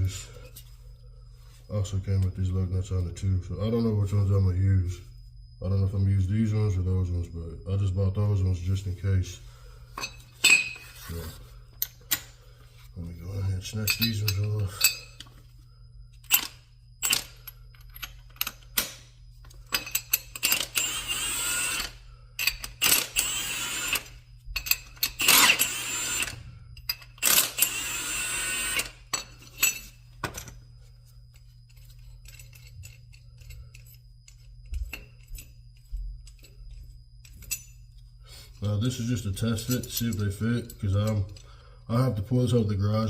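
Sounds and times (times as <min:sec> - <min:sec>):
metal clinks and taps: 0:10.0 - 0:10.9, 0:13.8 - 0:15.4, 0:16.2 - 0:20.6, 0:31.3 - 0:38.1.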